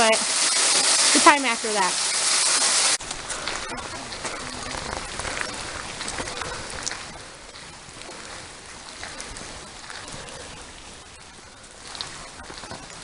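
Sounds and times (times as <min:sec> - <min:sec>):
patter of falling water: 0:00.0 - 0:13.0
water drips: 0:03.0 - 0:13.0.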